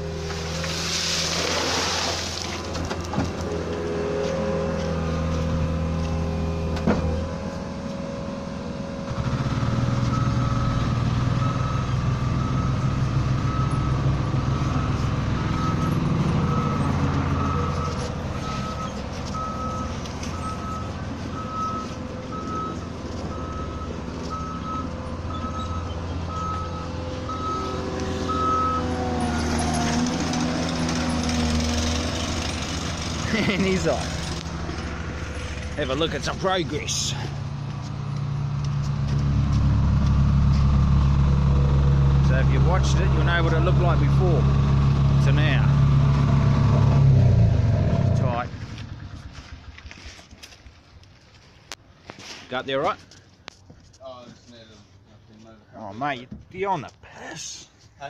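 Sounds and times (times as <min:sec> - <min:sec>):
diesel engine running: 0:00.0 - 0:51.7
reversing alarm beeping: 0:10.0 - 0:29.5.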